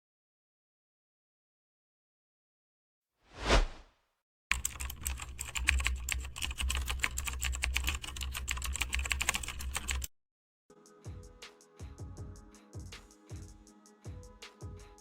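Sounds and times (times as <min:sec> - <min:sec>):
whoosh: 0:03.3 - 0:03.8
fast typing on a keyboard: 0:04.5 - 0:10.1.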